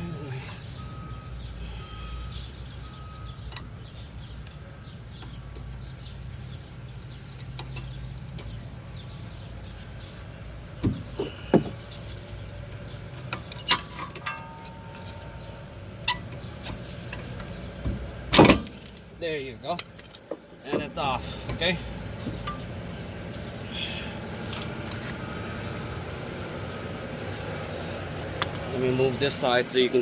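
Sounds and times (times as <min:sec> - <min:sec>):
low steady hum: 0:07.3 - 0:30.0.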